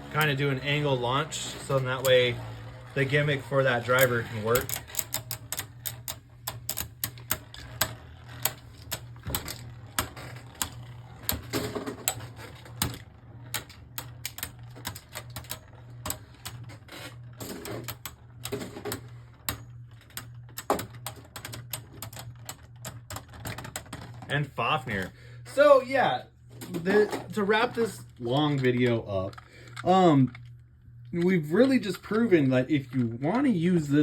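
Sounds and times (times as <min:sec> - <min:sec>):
spinning tops clacking: 0:00.0 - 0:16.8
steady low hum: 0:00.0 - 0:34.0.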